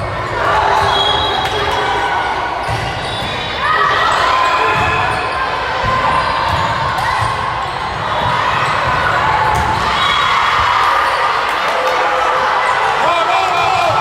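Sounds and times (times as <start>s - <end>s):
sneakers squeaking on floor: 0.0s - 9.8s
crowd chattering in a hall: 0.0s - 14.0s.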